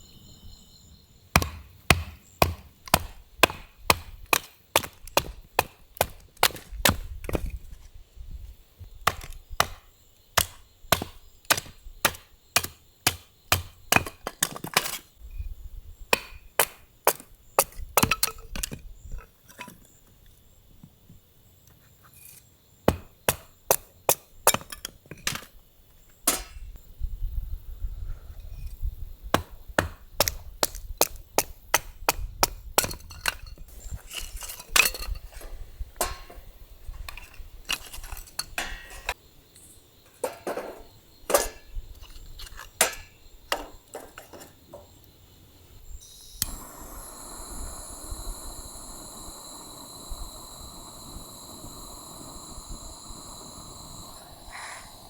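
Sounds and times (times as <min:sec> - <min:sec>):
steady outdoor hiss: 0:00.0 - 0:55.0
chopping on wood: 0:01.4 - 0:07.5, 0:09.0 - 0:09.8, 0:10.4 - 0:15.0, 0:16.1 - 0:18.3, 0:22.9 - 0:23.9, 0:29.3 - 0:33.0.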